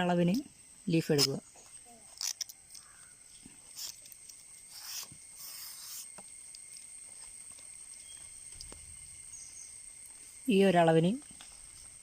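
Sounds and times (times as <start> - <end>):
palm leaf clicks: 1.1 - 1.4, 2.1 - 5.3.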